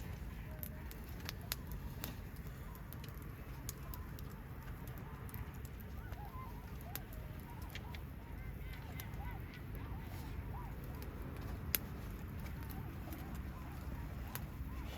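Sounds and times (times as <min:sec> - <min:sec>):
bonfire crackling and popping: 0:00.0 - 0:14.9
steady low rumble: 0:00.0 - 0:14.9
faint bird calls: 0:05.8 - 0:11.2.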